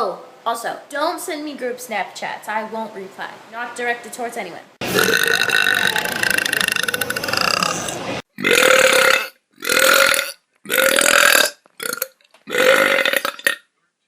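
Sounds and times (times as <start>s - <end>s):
person belching: 4.8s - 13.6s.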